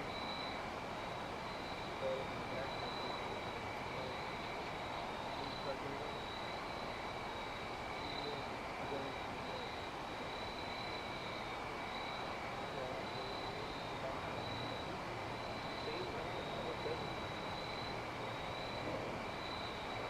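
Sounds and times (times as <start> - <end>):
steady high-pitched tones: 0.0 - 20.0.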